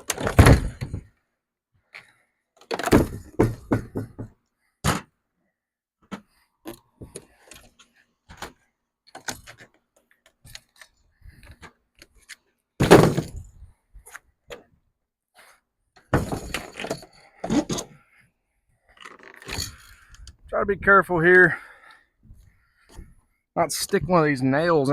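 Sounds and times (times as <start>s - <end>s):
wood knocks and cracks: 0.0s - 1.1s, 2.6s - 5.1s, 12.8s - 13.5s
loud wooden crash: 0.1s - 1.1s, 2.7s - 4.2s, 12.8s - 13.5s, 16.1s - 16.9s.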